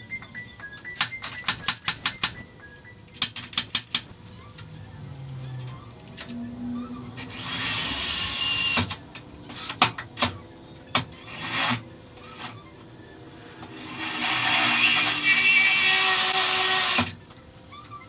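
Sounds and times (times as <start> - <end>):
power tool whining: 4.6 - 17.2.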